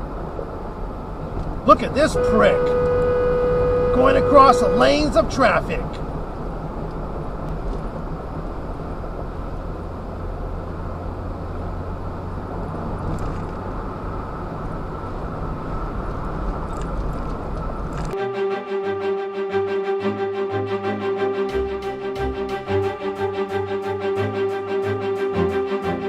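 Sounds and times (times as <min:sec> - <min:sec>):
car driving road noise: 0:00.0 - 0:18.2
music: 0:18.2 - 0:26.0.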